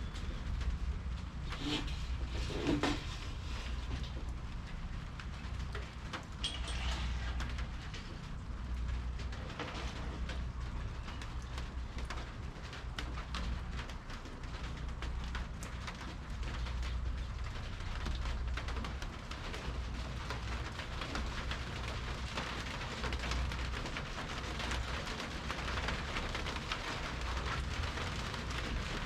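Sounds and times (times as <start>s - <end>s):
rain falling: 0.0s - 29.0s
steel scraping across cement: 6.4s - 7.6s.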